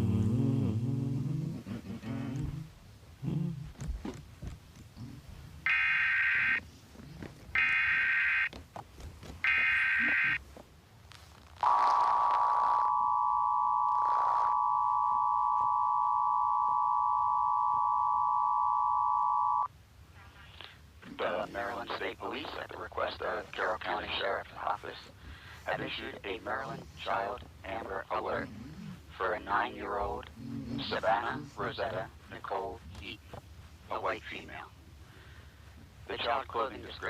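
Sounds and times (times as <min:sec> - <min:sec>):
two-tone attention signal: 0:11.6 - 0:19.7
warbling digital data tones: 0:11.6 - 0:19.7.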